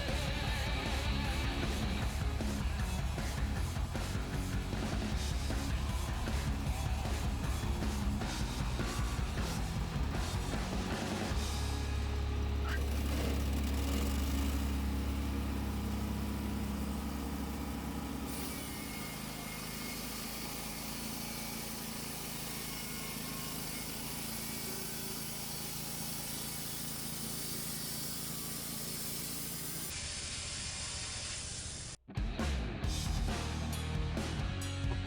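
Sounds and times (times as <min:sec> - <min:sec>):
engine humming: 0:00.0 - 0:18.4.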